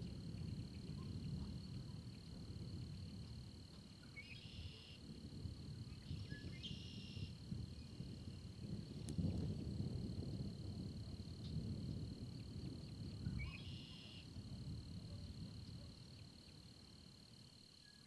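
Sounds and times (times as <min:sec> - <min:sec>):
high-pitched insect chorus: 0:00.0 - 0:18.0
bird calls: 0:13.3 - 0:14.2.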